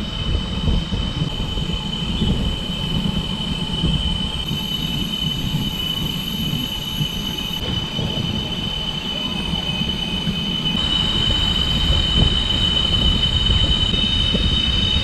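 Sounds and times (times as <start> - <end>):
cicadas droning: 0.0 - 15.0
shriller cicada chorus: 0.0 - 15.0
low rumble: 10.2 - 15.0.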